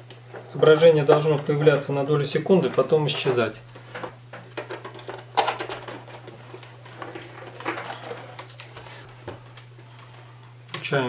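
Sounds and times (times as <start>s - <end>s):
low electrical hum: 0.0s - 11.0s
monitor and cables handling knocks: 3.8s - 9.6s.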